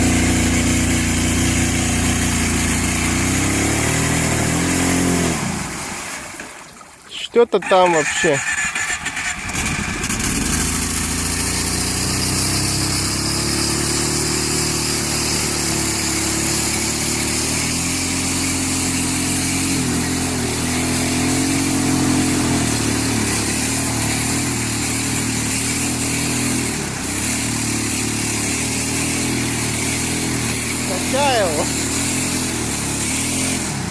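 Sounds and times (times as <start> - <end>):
engine idling: 7.1 - 33.9.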